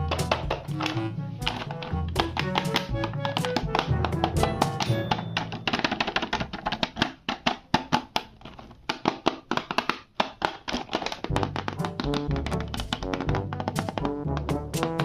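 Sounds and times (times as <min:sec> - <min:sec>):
bass: 0:00.0 - 0:05.7, 0:11.2 - 0:15.0
tapping clicking percussion: 0:00.0 - 0:15.0.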